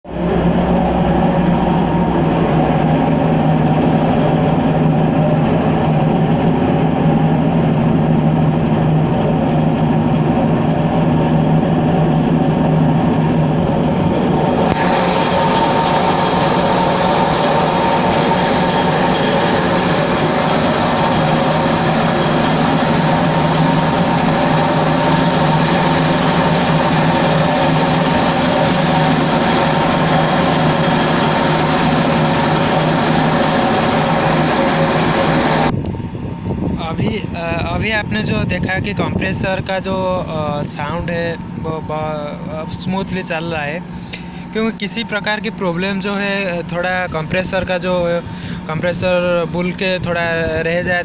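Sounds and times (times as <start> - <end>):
air compressor running: 0.1 - 51.0
bright high noise: 13.5 - 35.7.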